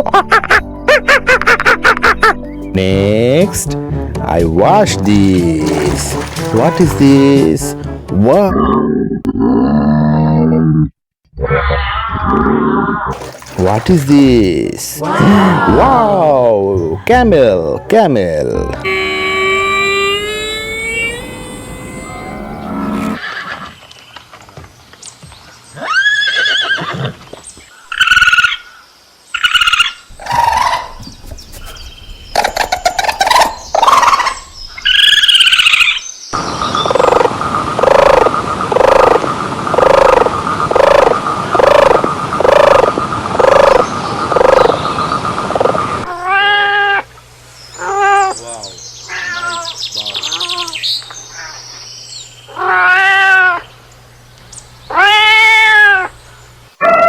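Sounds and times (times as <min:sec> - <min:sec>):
animal calls: 0:18.8 - 0:23.6, 0:29.4 - 0:36.0, 0:36.7 - 0:44.8, 0:47.7 - 0:51.8, 0:52.5 - 0:53.7.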